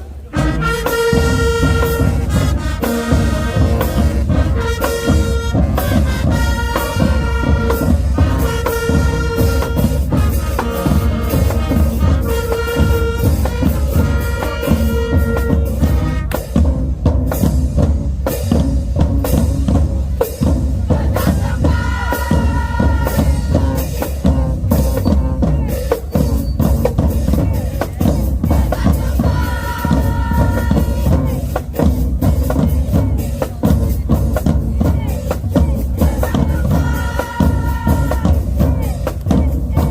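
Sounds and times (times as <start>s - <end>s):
brass chords: 0.0s - 27.1s
bass drum and snare: 0.4s - 39.9s.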